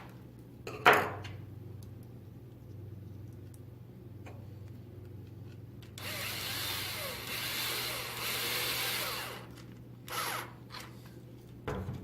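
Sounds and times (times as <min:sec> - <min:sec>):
power driver driving screws: 0:06.0 - 0:09.5, 0:10.1 - 0:10.9.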